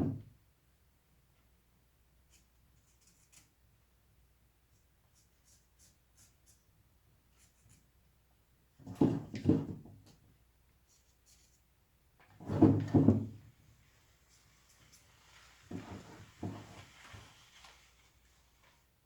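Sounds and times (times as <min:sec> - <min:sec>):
rough scraping of wood: 0:15.6 - 0:17.4.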